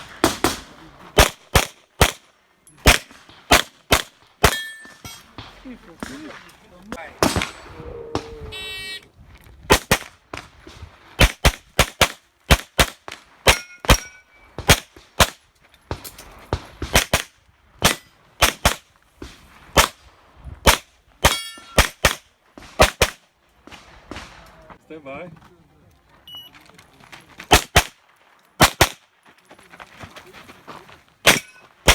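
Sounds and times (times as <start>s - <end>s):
pistol fire: 0.0s - 4.7s, 7.2s - 8.3s, 9.7s - 10.5s, 11.2s - 18.8s, 19.7s - 20.0s, 20.6s - 24.5s, 27.5s - 28.0s, 28.6s - 29.1s, 31.2s - 31.9s
steel target ringing: 4.5s - 5.2s, 13.5s - 14.5s, 21.3s - 21.9s.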